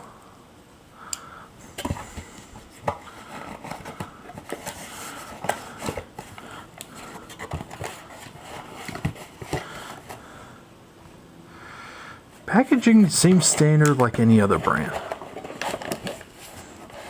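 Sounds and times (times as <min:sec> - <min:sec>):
packaging being opened by hand: 0:13.0 - 0:17.0.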